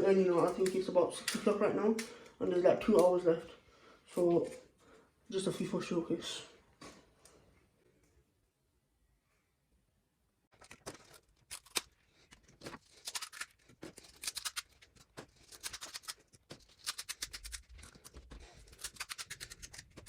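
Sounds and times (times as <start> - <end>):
dry brittle crackling: 10.5 - 20.0.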